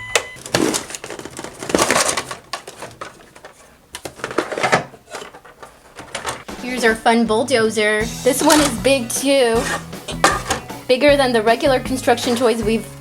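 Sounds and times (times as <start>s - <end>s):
plastic toy trucks handled: 0.1s - 6.5s, 8.3s - 8.9s, 9.6s - 10.7s
plastic clicks and knocks: 0.2s - 6.5s.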